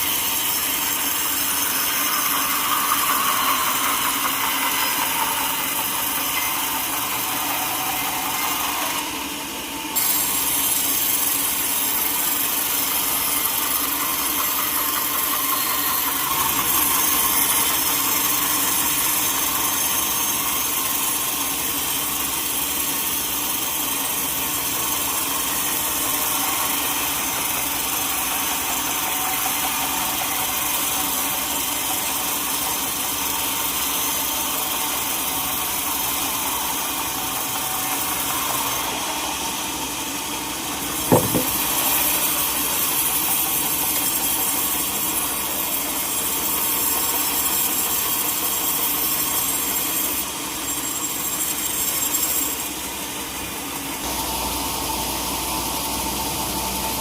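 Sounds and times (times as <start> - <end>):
sawmill saw cutting log: 0.0 - 57.0
sharp knock: 41.1 - 41.6.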